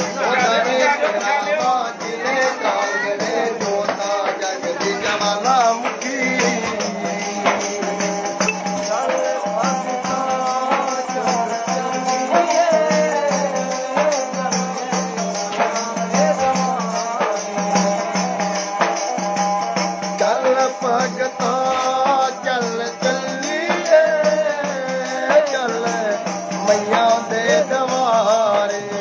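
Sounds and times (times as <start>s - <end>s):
quick percussion strokes: 0.0s - 29.0s
wavering melody line: 7.8s - 14.4s.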